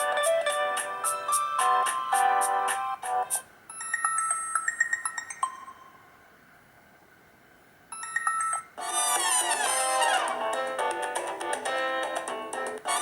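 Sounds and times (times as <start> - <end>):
melodic phone ringtone: 0.0 - 6.2, 7.9 - 10.3
high tinkling ringtone: 3.7 - 6.2, 7.9 - 8.8.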